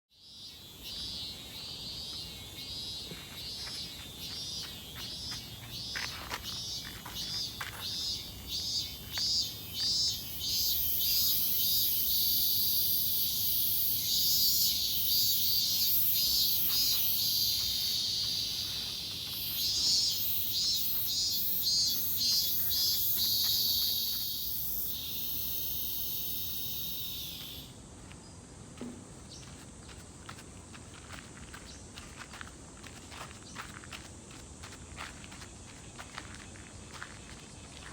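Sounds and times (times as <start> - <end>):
cicadas buzzing: 0.1 - 37.9.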